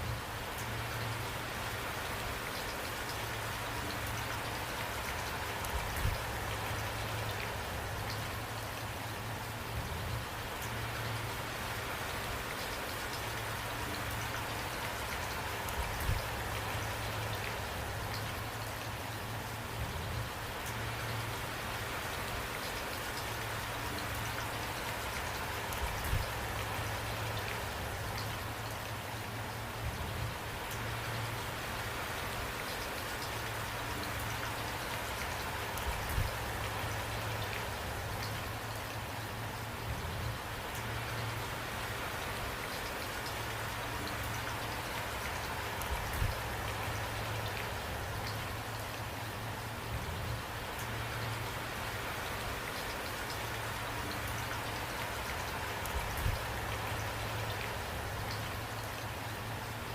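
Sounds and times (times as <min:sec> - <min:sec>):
rain drops pattering: 0:00.0 - 0:59.9
low steady rumble: 0:13.6 - 0:22.0, 0:33.4 - 0:42.3, 0:43.4 - 0:52.6.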